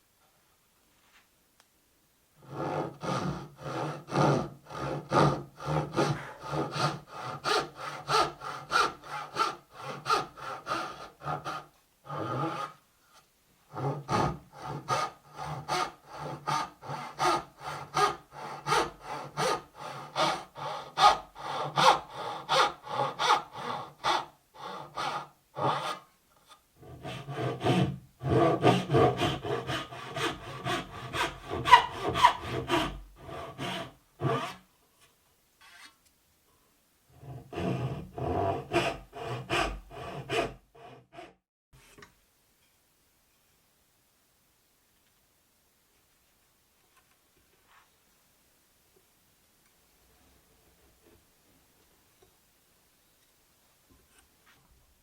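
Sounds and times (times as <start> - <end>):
hand saw cutting wood: 2.4 - 12.8, 13.7 - 34.7, 37.1 - 41.4.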